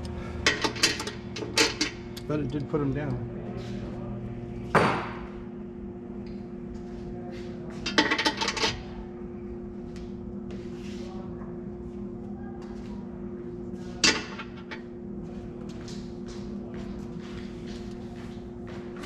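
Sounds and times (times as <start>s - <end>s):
steady hum: 0.0s - 19.0s
metal hardware clinking and rattling: 0.5s - 2.7s.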